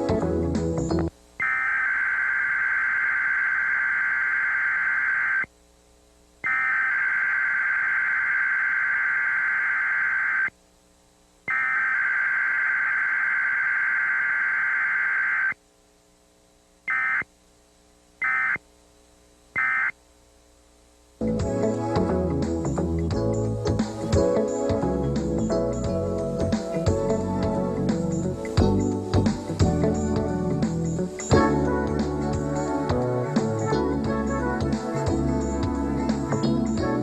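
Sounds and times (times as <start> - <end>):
digital data tone bursts: 1.4 - 5.5, 6.4 - 10.5, 11.5 - 15.6, 16.9 - 17.3, 18.2 - 18.6, 19.6 - 20.0.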